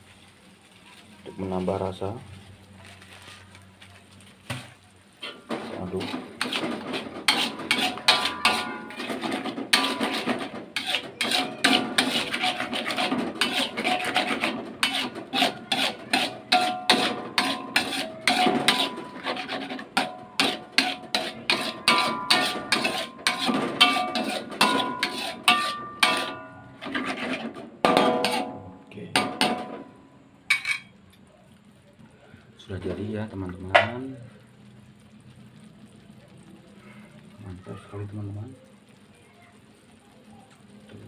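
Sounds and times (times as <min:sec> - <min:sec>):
spatula scraping metal pan: 0:05.2 - 0:28.6, 0:29.2 - 0:29.9, 0:30.5 - 0:30.9.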